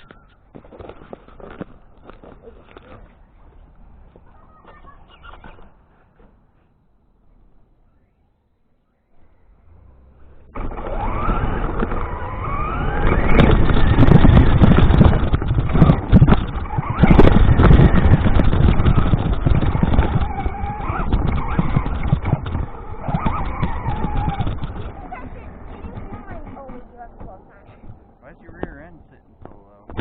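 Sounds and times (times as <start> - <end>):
rc car motor whining: 9.2 - 27.6
rough running noise: 10.3 - 30.0.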